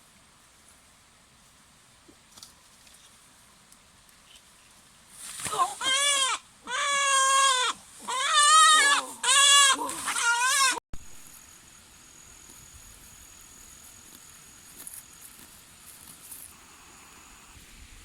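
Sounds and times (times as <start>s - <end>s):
thin high steady whine: 11.0s - 18.0s.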